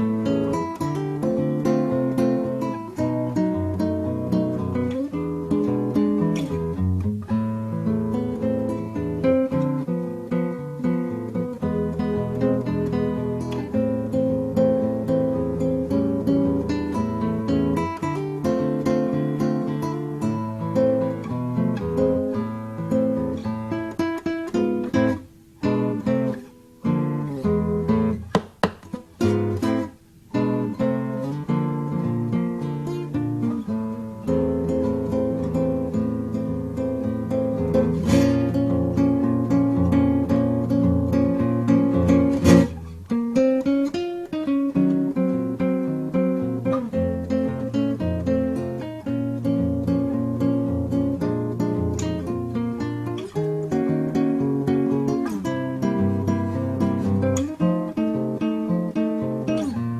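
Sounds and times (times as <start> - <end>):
acoustic guitar strumming: 0.0 - 59.9.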